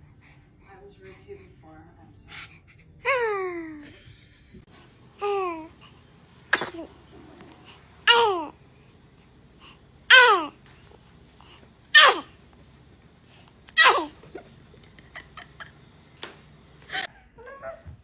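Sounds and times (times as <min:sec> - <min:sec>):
baby vocal bursts: 0:05.2 - 0:05.8, 0:06.5 - 0:07.0, 0:07.6 - 0:08.6, 0:10.1 - 0:10.6, 0:11.4 - 0:12.4, 0:13.3 - 0:14.4.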